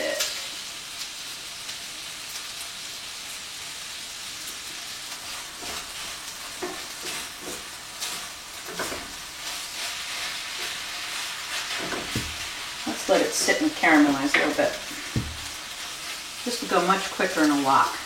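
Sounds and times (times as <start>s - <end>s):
rice sizzling in a frying pan: 0.0s - 18.0s
spatula scraping and stirring: 4.6s - 18.0s.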